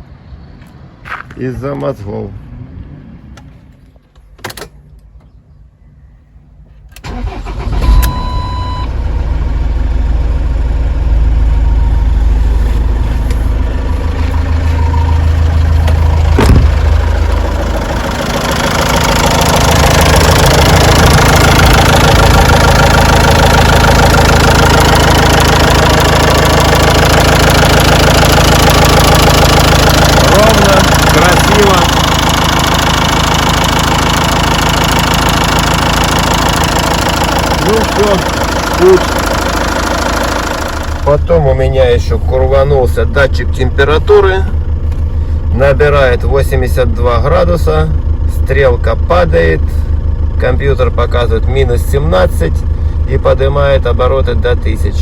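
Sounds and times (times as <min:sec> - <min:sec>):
diesel engine starting and idling: 0:06.6 - 0:55.0
short beep: 0:07.7 - 0:09.0, 0:14.0 - 0:16.6.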